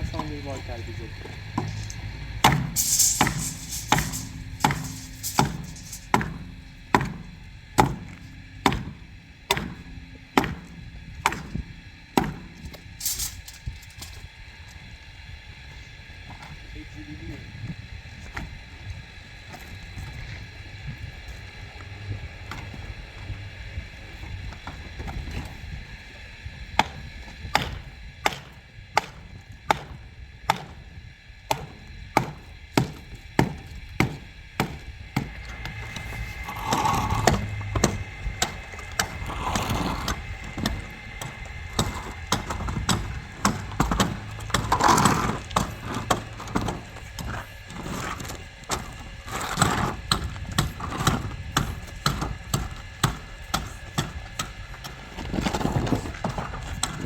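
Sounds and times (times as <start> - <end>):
loud noisy sounds: 0.0 - 14.2, 34.6 - 47.2
blows striking wood: 1.5 - 13.5.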